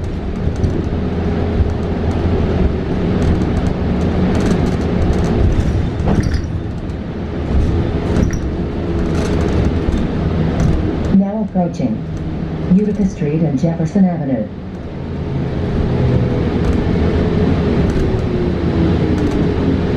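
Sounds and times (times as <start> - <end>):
rattles and clicks: 0.0 - 13.2, 16.2 - 17.2, 17.8 - 18.4, 19.1 - 19.6
road and tyre rumble: 0.0 - 19.9.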